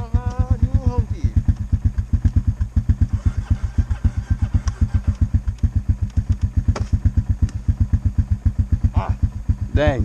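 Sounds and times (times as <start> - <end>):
atv engine idling: 0.0 - 10.0.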